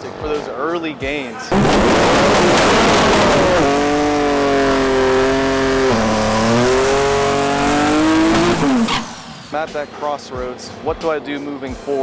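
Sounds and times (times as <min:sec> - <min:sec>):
car engine at full throttle: 0:01.5 - 0:09.8.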